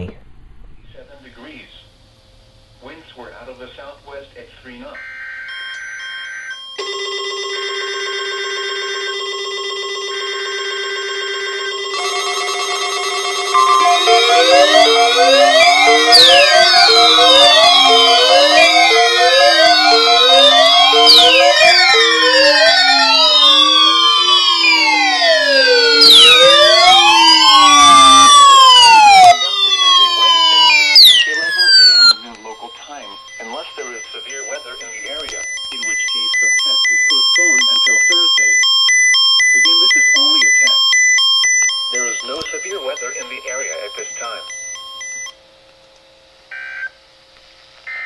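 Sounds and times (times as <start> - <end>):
buzzing electronic alarm tone: 4.9 - 45.4, 46.5 - 47.0
sirens whooping and wailing: 5.0 - 44.6
raspy two-tone data bursts: 13.2 - 45.2.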